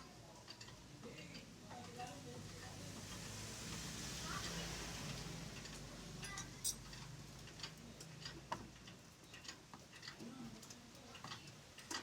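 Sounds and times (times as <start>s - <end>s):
hand tools and metal parts clinking: 5.6s - 12.0s.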